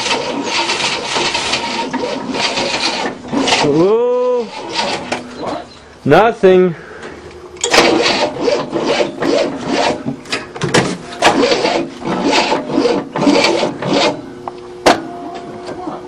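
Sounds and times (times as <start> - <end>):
rhythmic rasping: 0.0 - 5.7, 7.7 - 10.1, 11.2 - 14.3.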